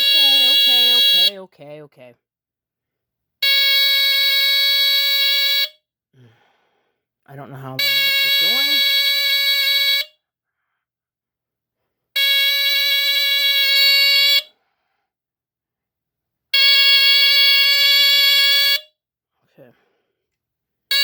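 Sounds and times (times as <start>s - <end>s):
smoke detector horn blasts: 0.0s - 1.4s, 7.7s - 10.2s, 12.2s - 14.5s.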